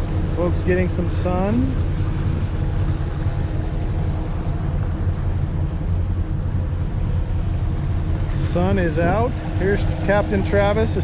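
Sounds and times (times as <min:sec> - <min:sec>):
motorboat engine droning: 0:00.0 - 0:11.0
water noise: 0:00.0 - 0:11.0
wind: 0:00.0 - 0:11.0.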